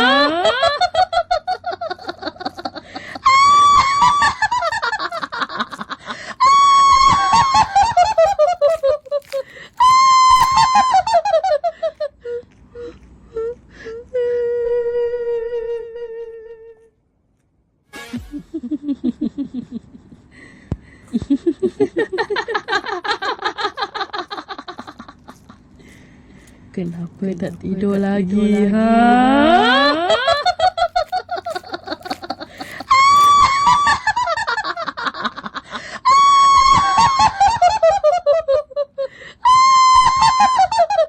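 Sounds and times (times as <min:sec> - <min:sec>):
ghost laughing: 0:00.0 - 0:09.8, 0:18.1 - 0:26.1, 0:28.4 - 0:41.0.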